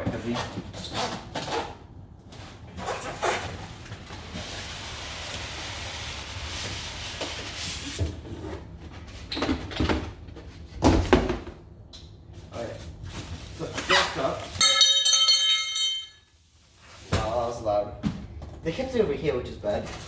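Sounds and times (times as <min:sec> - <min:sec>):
metal dough hook clattering: 0:14.6 - 0:16.1.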